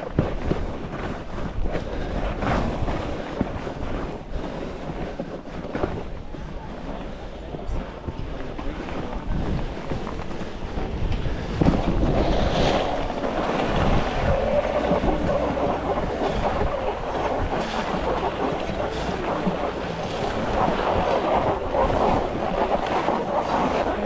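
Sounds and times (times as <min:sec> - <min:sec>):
wind rushing over microphone: 0:00.0 - 0:24.0
edges scraping over snow: 0:08.6 - 0:24.0.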